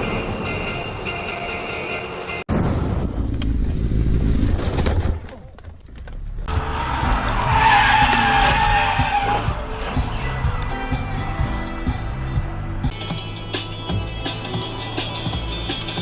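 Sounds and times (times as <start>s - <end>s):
road and engine rumble: 0.0s - 16.0s
car tyres squealing: 6.4s - 10.6s.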